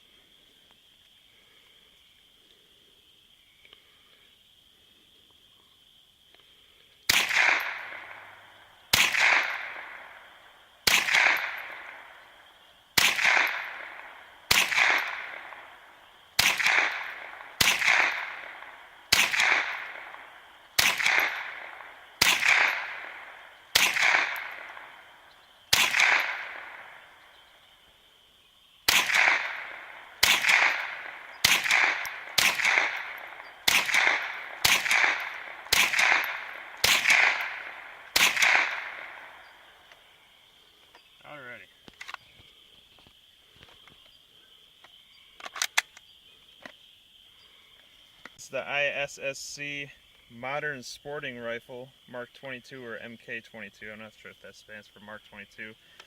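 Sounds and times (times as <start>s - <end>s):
rifle shots with echo: 7.1s - 12.4s, 13.0s - 27.4s, 28.8s - 39.8s.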